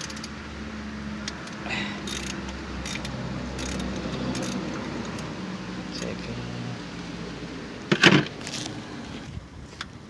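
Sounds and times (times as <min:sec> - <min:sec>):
ratchet wrench clicking: 0:00.0 - 0:00.4, 0:01.2 - 0:06.2.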